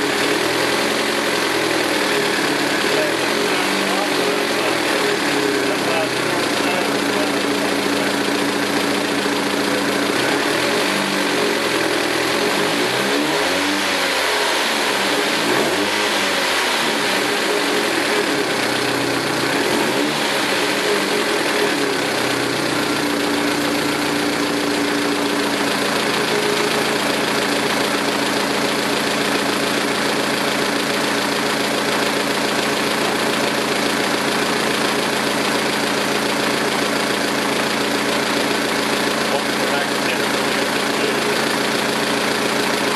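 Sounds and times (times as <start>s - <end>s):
car engine running: 0.0s - 42.9s.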